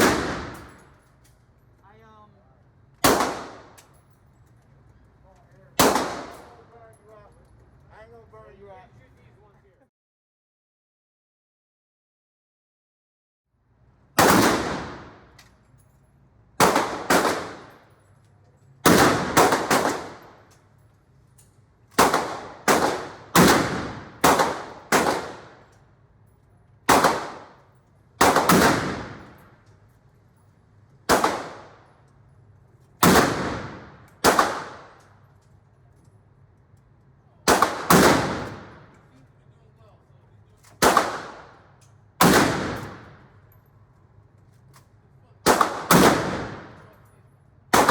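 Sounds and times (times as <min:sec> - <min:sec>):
gunshots: 0:00.0 - 0:00.9, 0:03.0 - 0:03.8, 0:05.8 - 0:06.6, 0:14.2 - 0:15.4, 0:16.6 - 0:17.8, 0:18.8 - 0:20.5, 0:22.0 - 0:25.7, 0:26.9 - 0:29.6, 0:31.1 - 0:31.9, 0:33.0 - 0:35.0, 0:37.5 - 0:39.0, 0:40.8 - 0:41.6, 0:42.2 - 0:43.3, 0:45.4 - 0:46.9.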